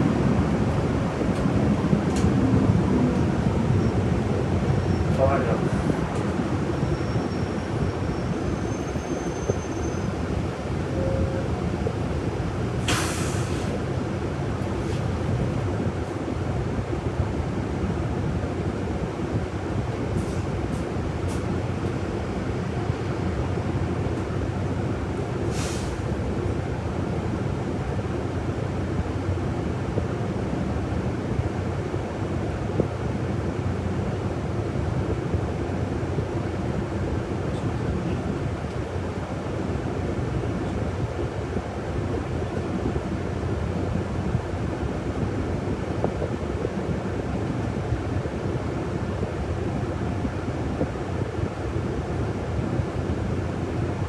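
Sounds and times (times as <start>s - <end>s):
bus engine and road rumble: 0.0s - 54.0s
sharp hiss of air: 12.8s - 13.8s.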